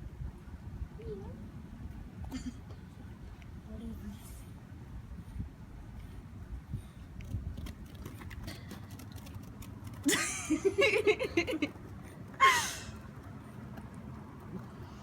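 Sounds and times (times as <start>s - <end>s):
person laughing: 10.1s - 11.7s, 12.4s - 12.9s
breathy gasp-like cry: 12.4s - 13.0s.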